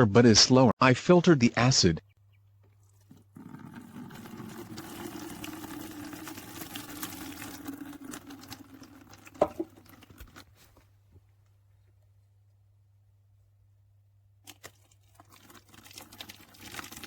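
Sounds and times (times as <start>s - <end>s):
liquid trickling through cloth filter: 2.4s - 11.3s, 14.4s - 17.0s.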